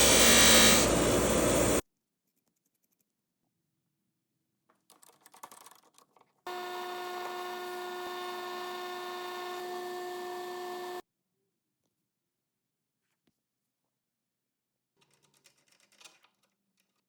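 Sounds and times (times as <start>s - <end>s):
power tool whining: 0.0s - 1.8s, 6.5s - 11.0s.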